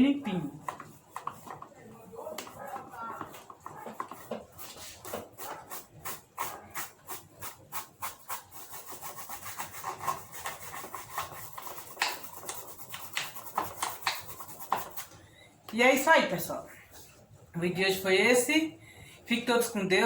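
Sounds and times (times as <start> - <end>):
brush scrubbing fan parts: 0.3 - 15.2.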